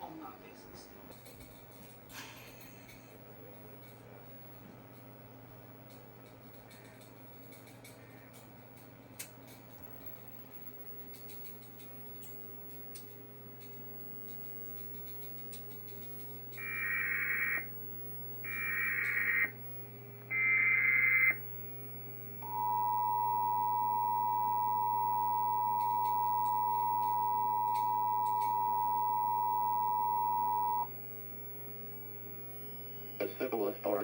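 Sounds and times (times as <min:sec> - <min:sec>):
two-tone attention signal: 0:22.4 - 0:30.9.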